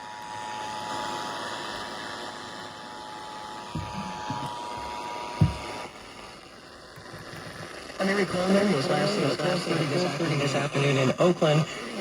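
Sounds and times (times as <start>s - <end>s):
low thumps: 3.8s - 4.5s
radio static hiss: 6.8s - 12.0s.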